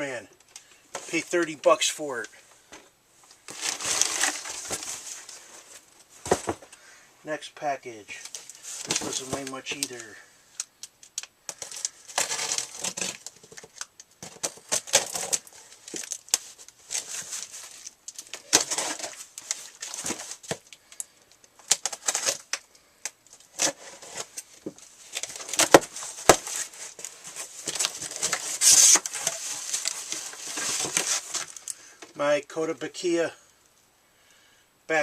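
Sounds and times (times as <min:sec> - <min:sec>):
packaging crinkling and tearing: 0:03.4 - 0:05.4, 0:08.2 - 0:31.8.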